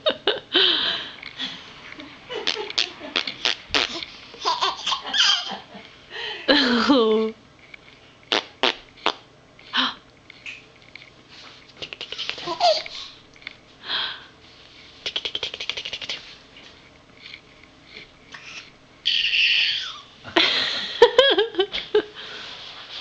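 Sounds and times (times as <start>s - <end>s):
baby laughing: 2.4s - 5.7s, 11.8s - 13.0s, 18.4s - 20.1s
baby making sputtering noises: 15.1s - 16.2s.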